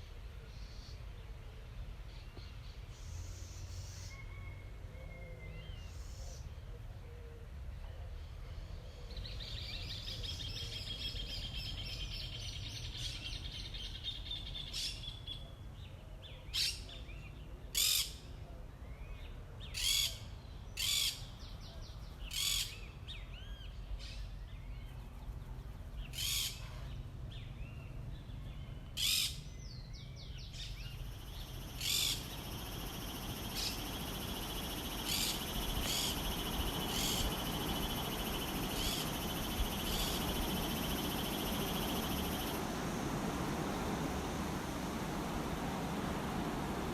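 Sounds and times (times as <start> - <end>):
insects trilling: 30.8 - 46.9.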